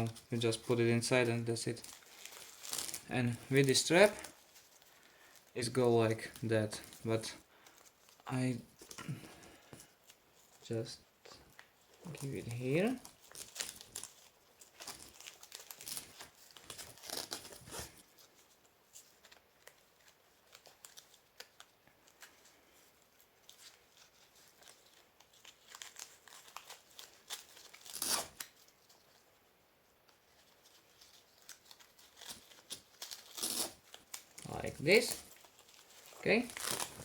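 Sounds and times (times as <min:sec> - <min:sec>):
nylon straps rustling and scraping: 0:00.0 - 0:29.5, 0:30.1 - 0:37.0.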